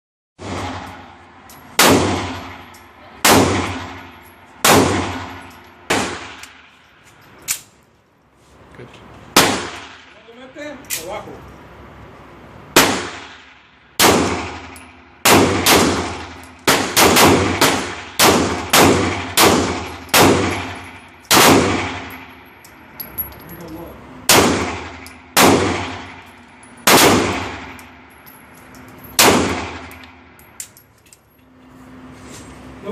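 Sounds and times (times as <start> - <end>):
gunshots with echoing tail: 1.8 - 2.6, 3.2 - 6.4, 12.8 - 22.2, 24.3 - 26.2, 26.8 - 27.8, 29.2 - 29.9.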